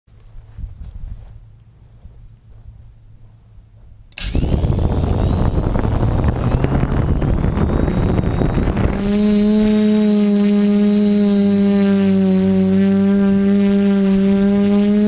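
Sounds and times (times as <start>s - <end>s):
quadcopter motors whining: 4.1s - 15.0s.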